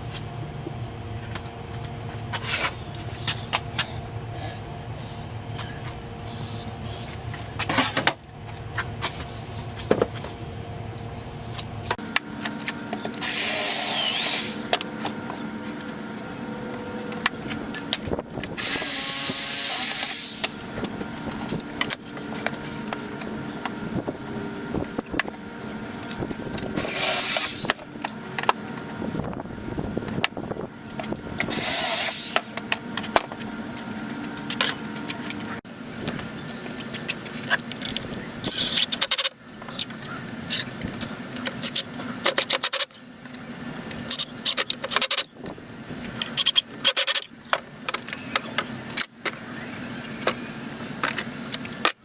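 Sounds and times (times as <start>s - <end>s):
power drill bursts: 13.2s - 14.7s, 18.6s - 20.6s, 26.8s - 27.7s, 31.4s - 32.5s.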